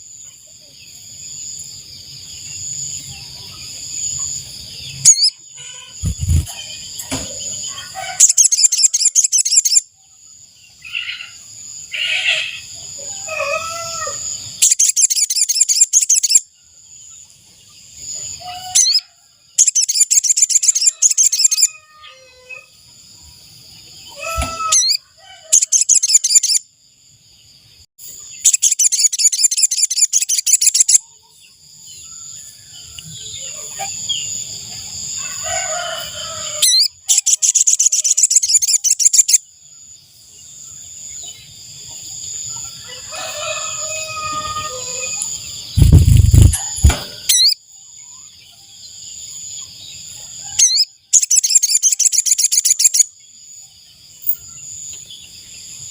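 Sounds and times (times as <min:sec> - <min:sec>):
insects droning: 0:00.0 - 0:55.9
buzzy bird trill: 0:04.1 - 0:07.0, 0:07.6 - 0:09.8, 0:10.9 - 0:16.4, 0:18.2 - 0:22.7, 0:24.2 - 0:26.6, 0:28.3 - 0:31.0, 0:35.2 - 0:39.4, 0:42.6 - 0:47.6, 0:50.5 - 0:53.1
lower bird calls: 0:04.1 - 0:09.8, 0:43.4 - 0:48.2.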